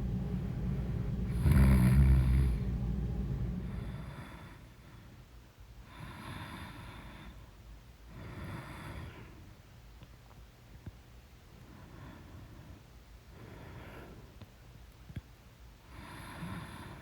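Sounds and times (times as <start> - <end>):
woman snoring: 1.3 - 2.6.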